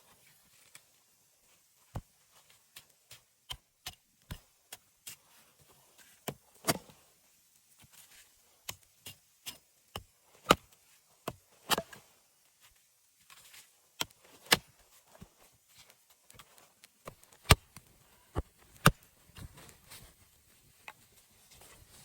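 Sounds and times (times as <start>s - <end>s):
wood being chopped: 17.4s - 17.6s, 18.4s - 19.0s.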